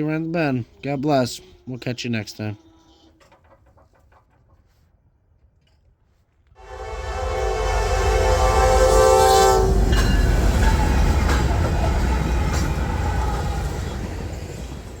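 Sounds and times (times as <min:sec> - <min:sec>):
wheels clicking on rails: 0:00.0 - 0:04.9, 0:06.9 - 0:15.0
train horn: 0:06.6 - 0:13.4
passing train rumble: 0:06.6 - 0:15.0.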